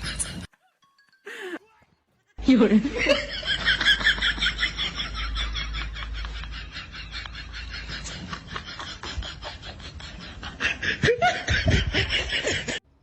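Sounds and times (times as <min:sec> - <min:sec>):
person laughing: 0:03.0 - 0:12.8.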